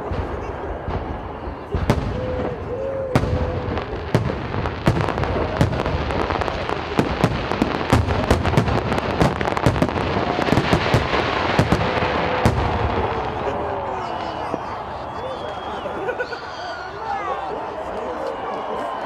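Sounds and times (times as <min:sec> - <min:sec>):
firecracker bangs: 0:00.0 - 0:15.0
fireworks crackling: 0:00.0 - 0:16.3.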